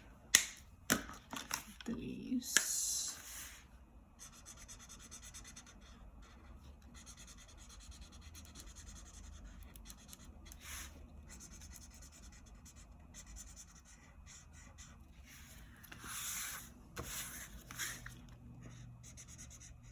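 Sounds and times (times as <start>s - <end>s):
marker scratching on paper: 4.2s - 19.9s.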